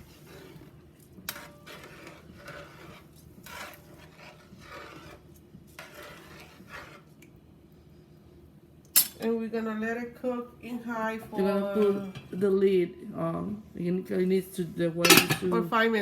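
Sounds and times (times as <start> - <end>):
spoon scraping rice in a pot: 0.0 - 7.4.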